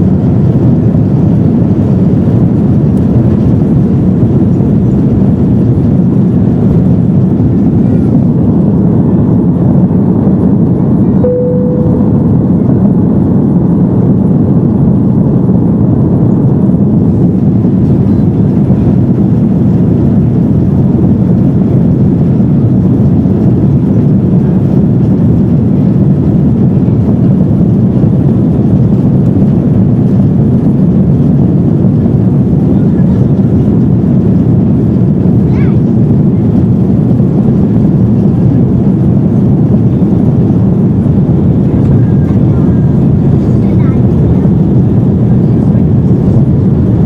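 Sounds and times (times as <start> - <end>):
aircraft cabin engine rumble: 0.0 - 47.0
single tone: 11.2 - 12.8.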